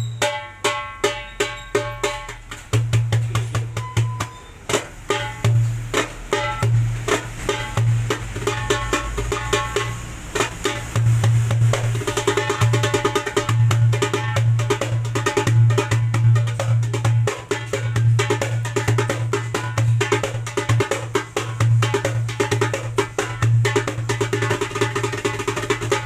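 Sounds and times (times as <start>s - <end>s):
deep ringing drum bass note: 0.0s - 20.8s
hand drum rapid sharp strokes: 0.0s - 26.0s.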